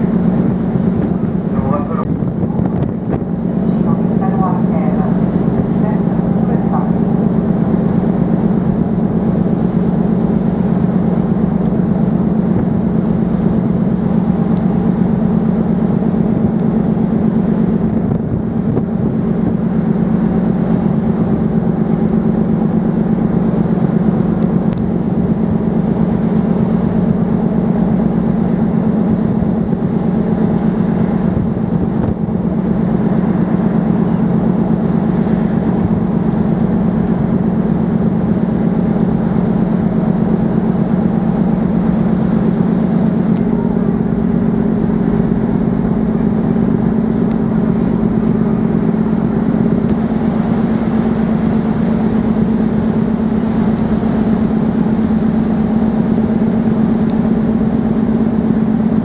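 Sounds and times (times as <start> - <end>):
ferry engines droning: 0.0 - 59.0.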